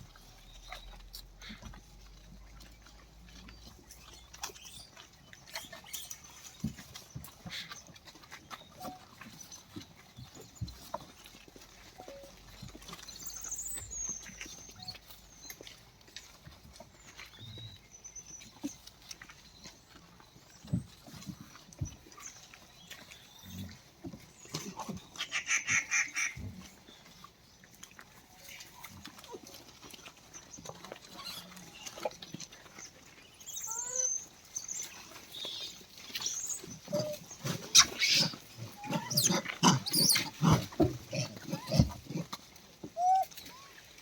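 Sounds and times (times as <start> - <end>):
monkey calls and grunting: 3.3 - 17.8, 28.3 - 43.9.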